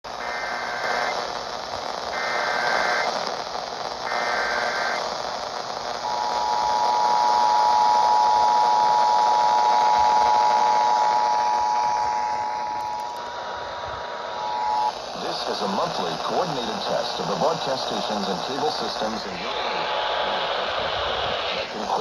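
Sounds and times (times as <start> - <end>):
radio static hiss: 0.1 - 22.0.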